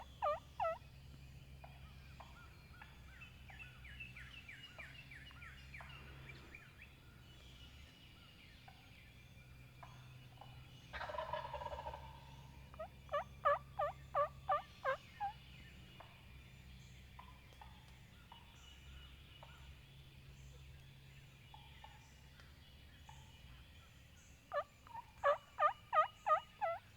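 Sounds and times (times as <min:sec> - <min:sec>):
turkey gobbling: 0:00.0 - 0:00.8, 0:11.0 - 0:15.4, 0:24.5 - 0:26.9
turkey yelps: 0:00.0 - 0:00.8, 0:12.8 - 0:15.4, 0:24.5 - 0:26.9.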